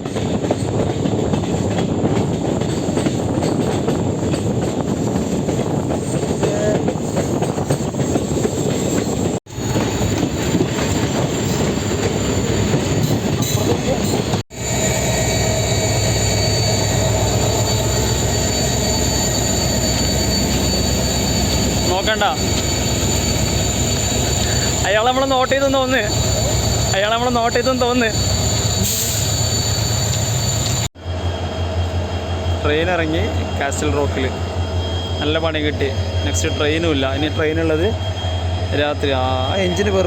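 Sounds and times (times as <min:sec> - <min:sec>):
train wheels on rails: 0:00.0 - 0:40.0
wheels squealing: 0:05.0 - 0:32.6.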